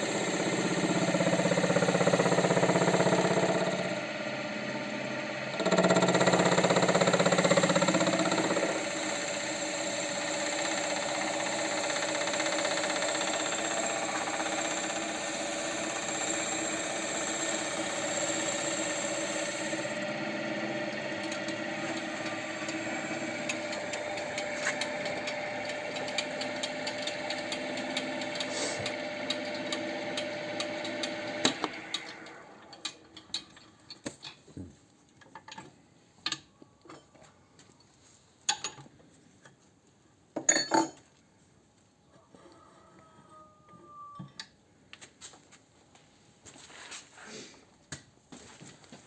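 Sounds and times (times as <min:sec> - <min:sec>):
machine spinning down: 0:00.0 - 0:32.7
boring machine humming: 0:00.0 - 0:32.8.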